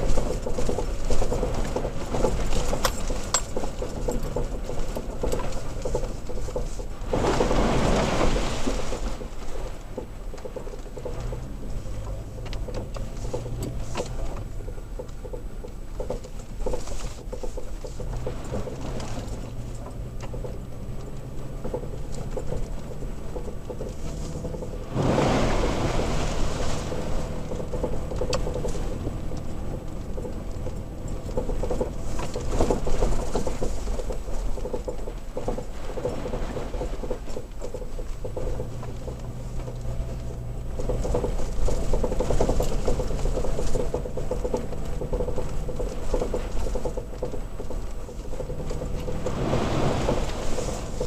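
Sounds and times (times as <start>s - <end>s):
low engine hum: 0.0s - 51.0s
truck cab rattling: 0.0s - 51.0s
rushing noise: 24.8s - 27.5s, 49.1s - 51.0s.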